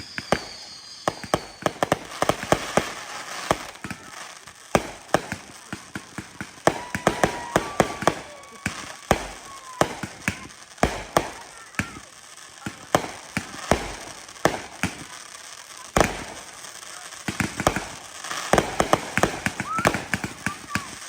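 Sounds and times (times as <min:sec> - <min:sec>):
thin high whistle: 0:00.0 - 0:01.8
fireworks popping and crackling: 0:00.0 - 0:21.0.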